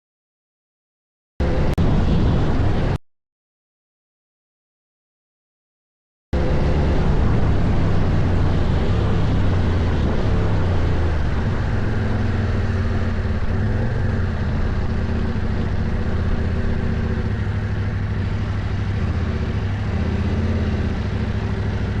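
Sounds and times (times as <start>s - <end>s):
wind and riding noise: 1.4s - 3.0s, 6.4s - 22.0s
motorcycle engine running: 6.4s - 22.0s.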